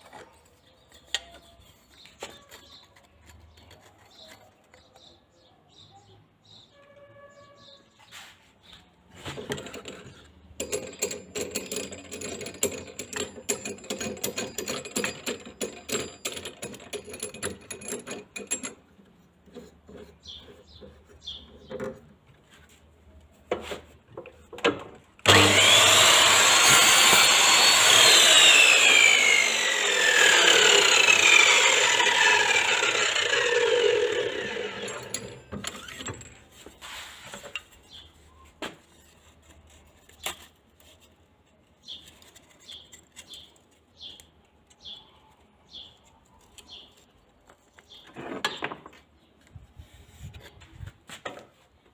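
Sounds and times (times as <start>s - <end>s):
mitre saw motor whining: 25.2s - 36.0s.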